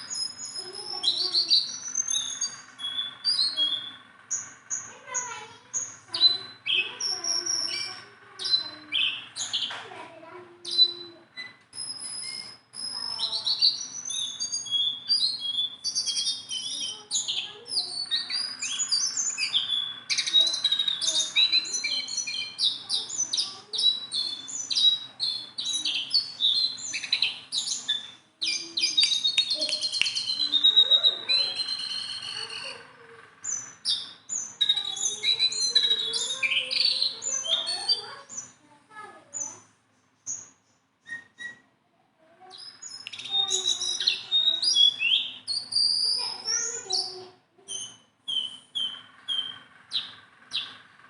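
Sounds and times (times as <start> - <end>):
songbird singing: 0.0 - 41.8, 42.4 - 51.0.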